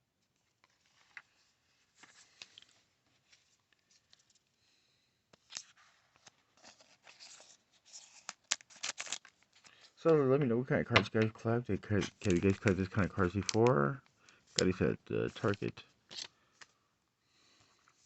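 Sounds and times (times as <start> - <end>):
cards rustling and clicking: 0.5 - 4.4, 5.4 - 16.8.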